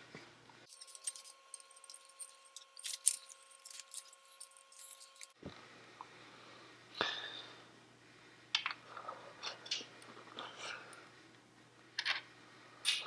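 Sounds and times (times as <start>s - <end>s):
small metal parts clinking: 0.7s - 5.4s.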